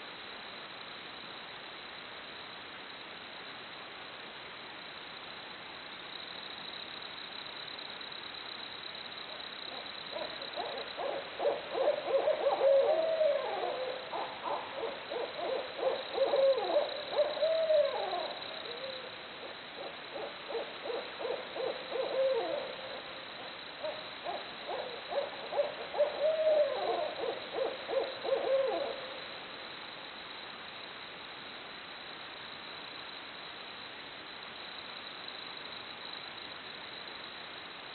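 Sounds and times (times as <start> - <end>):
owls hooting and wailing: 9.7 - 19.1, 19.8 - 22.8, 23.8 - 29.1.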